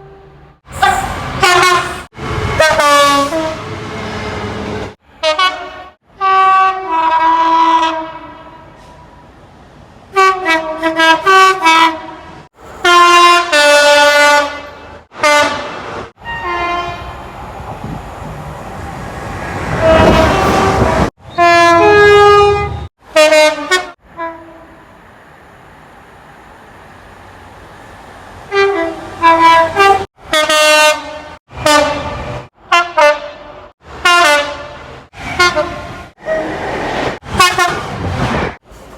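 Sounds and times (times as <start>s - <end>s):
two-tone train horn blasts: 0.0s - 3.7s, 5.1s - 9.0s, 10.2s - 17.2s, 19.7s - 24.8s, 28.5s - 36.6s, 37.3s - 37.9s
train passing: 0.4s - 5.8s, 14.7s - 23.2s, 24.0s - 30.3s, 33.4s - 38.9s.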